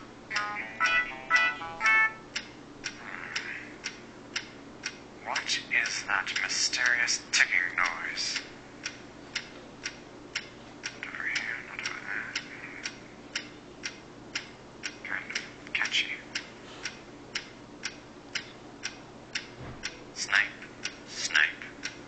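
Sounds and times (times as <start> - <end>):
clock ticking: 0.3 - 22.0.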